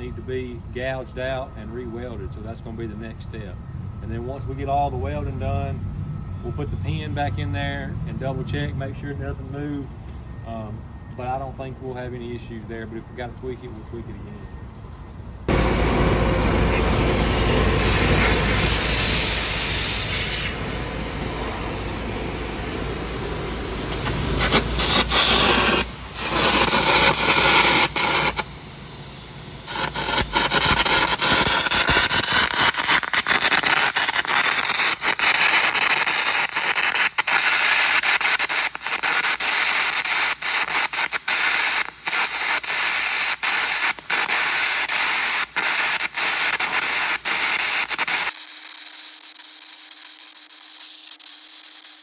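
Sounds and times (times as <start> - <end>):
arc gouging hissing crackle: 15.5 - 52.0.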